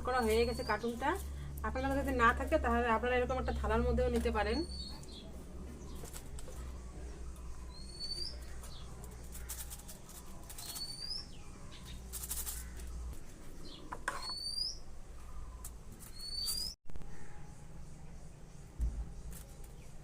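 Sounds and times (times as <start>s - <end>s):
handling knocks and rustles: 4.0s - 6.8s
bird rising chirp: 4.5s - 8.8s, 13.6s - 18.5s.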